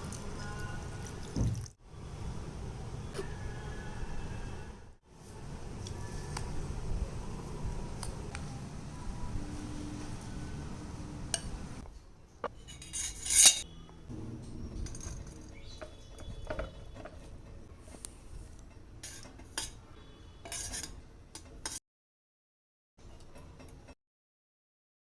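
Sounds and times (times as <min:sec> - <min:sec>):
metal utensils and pots clinking: 0:12.5 - 0:13.7, 0:14.4 - 0:17.6, 0:18.6 - 0:19.8, 0:20.4 - 0:21.8.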